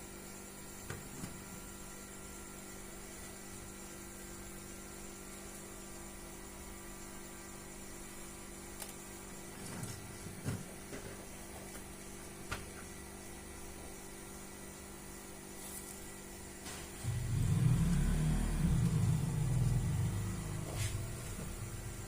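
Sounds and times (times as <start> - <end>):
motorcycle engine rumbling: 17.0 - 22.0.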